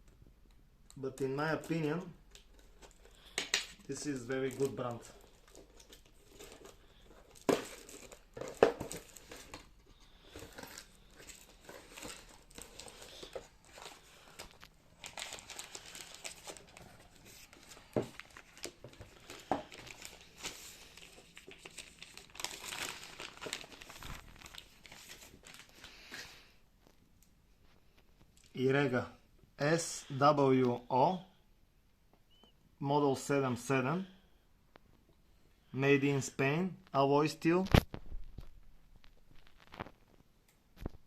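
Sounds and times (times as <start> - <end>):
rustling and crinkling: 1.7 - 28.6, 37.7 - 41.0.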